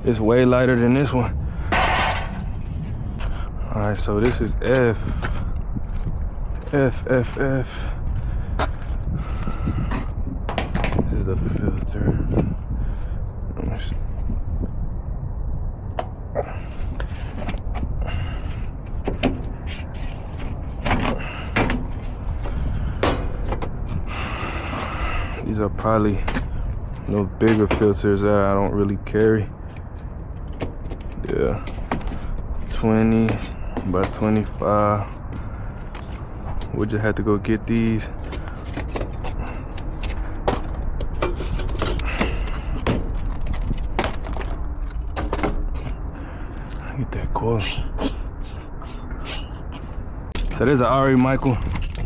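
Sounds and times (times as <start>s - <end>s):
low rumble: 0.0s - 27.4s
steady low hum: 0.0s - 52.0s
knocks and rattles of handled objects: 38.2s - 46.8s.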